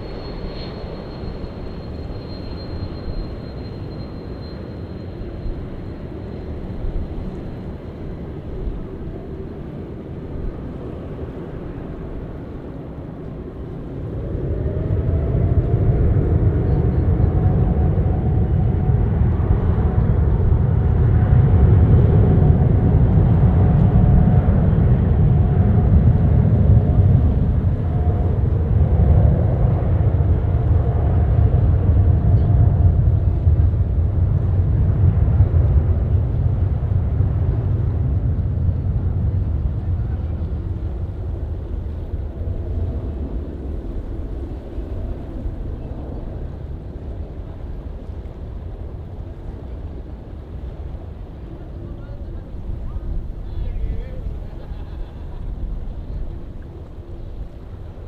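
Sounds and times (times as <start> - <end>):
jet engines rumbling and whining: 0.0 - 58.0.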